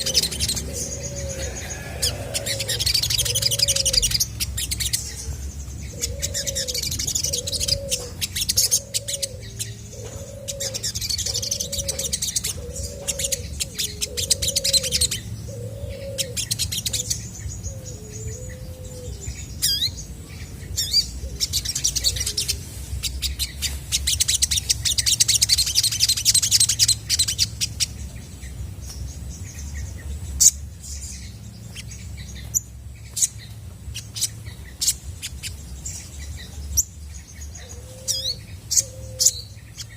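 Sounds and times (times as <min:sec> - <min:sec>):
bird chirps and trills: 0:00.0 - 0:39.9.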